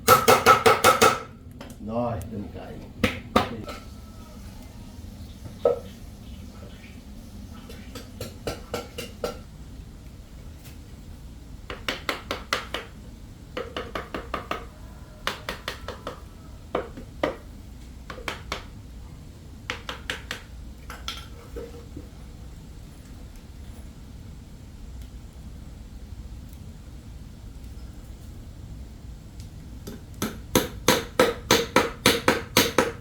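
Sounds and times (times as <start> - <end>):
hammer driving nails into wood: 0.1 - 1.3, 29.9 - 33.0.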